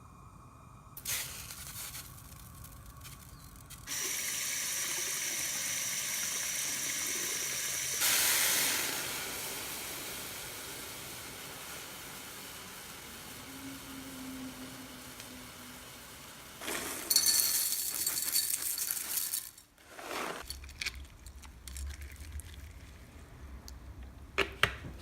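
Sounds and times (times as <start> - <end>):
steady rushing hiss: 0.0 - 19.7.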